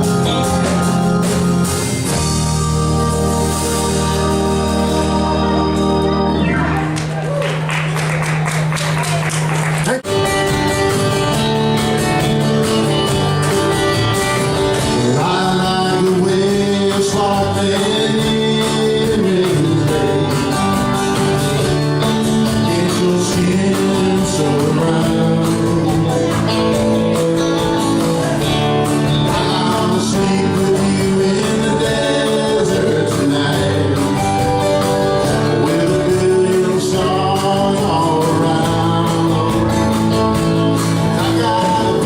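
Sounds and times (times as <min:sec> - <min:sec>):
guitar: 0:00.0 - 0:42.0
person singing: 0:14.7 - 0:21.0, 0:22.0 - 0:42.0.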